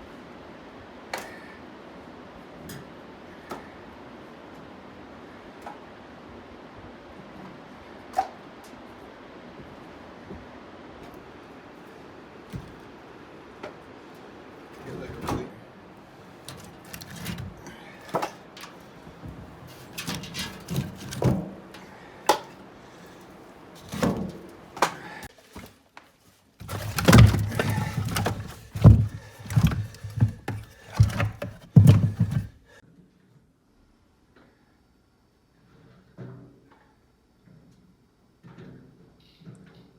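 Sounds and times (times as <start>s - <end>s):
firewood pieces knocking together: 16.4s - 22.6s, 26.6s - 32.6s.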